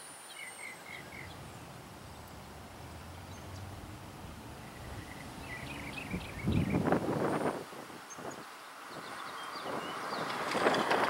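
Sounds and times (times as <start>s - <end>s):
bird chirps: 0.2s - 3.8s, 4.5s - 7.4s
low steady rumble: 0.8s - 7.3s.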